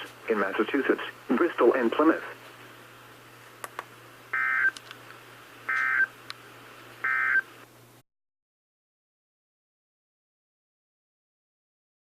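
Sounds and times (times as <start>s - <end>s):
two-tone digital squawks: 4.4s - 4.7s, 7.1s - 7.4s.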